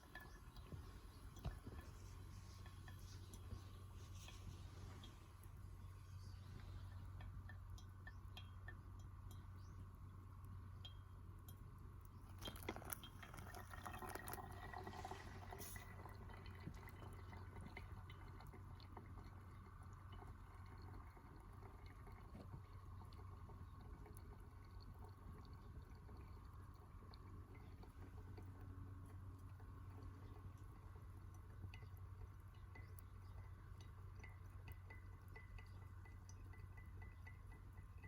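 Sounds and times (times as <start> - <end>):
liquid pouring into a vessel: 0.0 - 9.1, 11.6 - 38.0
steady low hum: 0.0 - 38.0
small clinks: 10.8 - 15.9.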